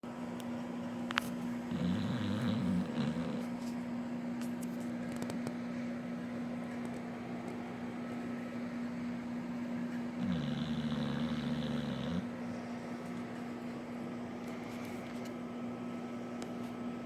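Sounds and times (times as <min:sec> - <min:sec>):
steady low hum: 0:00.0 - 0:17.0
dog snoring: 0:01.7 - 0:03.5, 0:10.2 - 0:12.3.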